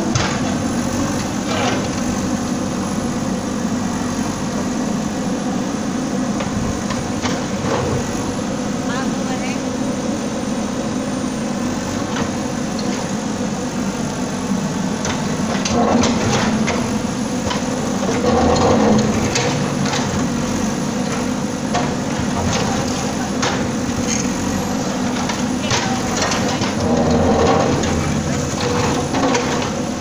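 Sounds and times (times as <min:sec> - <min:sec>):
bulldozer engine running: 0:00.0 - 0:30.0
crunching metal clatter: 0:15.0 - 0:30.0.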